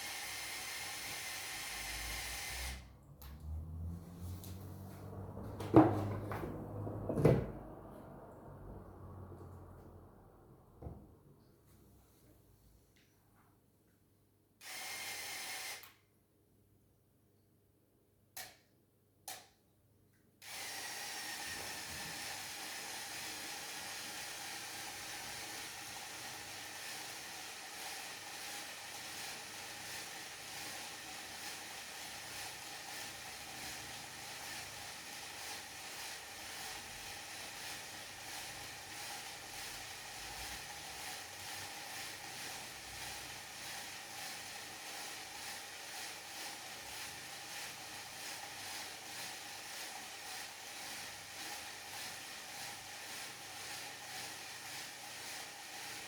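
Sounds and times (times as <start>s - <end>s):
small electric motor whirring: 0.0s - 3.4s, 14.6s - 16.0s, 20.4s - 56.0s.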